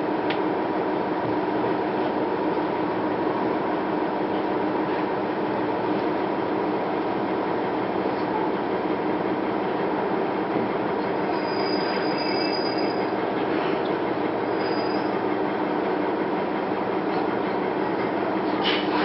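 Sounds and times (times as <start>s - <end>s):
train wheels rumbling on rail: 0.0s - 19.0s
thin wheel squeals: 11.2s - 13.8s, 14.4s - 15.2s.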